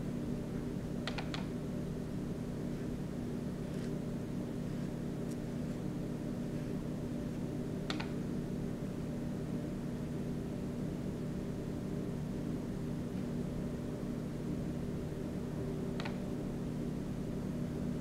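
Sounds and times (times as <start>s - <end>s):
sharp click: 1.0s - 1.5s, 7.9s - 8.2s, 16.0s - 16.2s.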